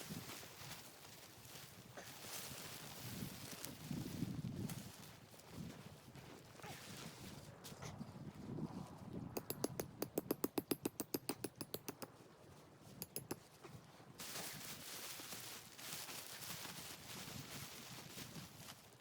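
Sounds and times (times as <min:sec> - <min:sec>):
sharp slapping taps: 0:09.4 - 0:12.1.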